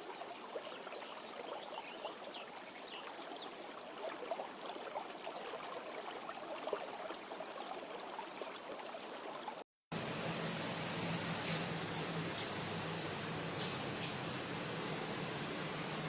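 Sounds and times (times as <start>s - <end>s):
stream trickling and gurgling: 0.0s - 16.0s
steady low hum: 10.0s - 16.0s.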